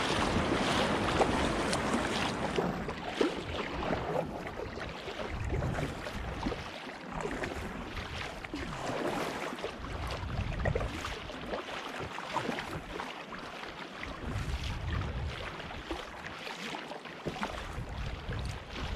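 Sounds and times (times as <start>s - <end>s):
wind buffeting the microphone: 0.0s - 6.6s, 9.9s - 11.3s, 14.2s - 16.0s, 17.6s - 18.9s
sea water splashing and lapping: 0.0s - 18.9s.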